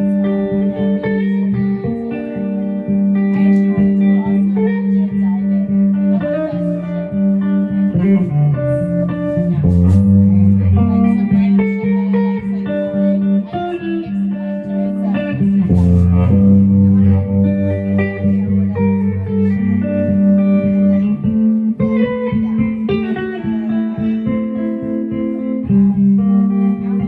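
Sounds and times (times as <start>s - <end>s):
plucked guitar notes: 0.0s - 27.0s
sustained bass line: 0.0s - 27.0s.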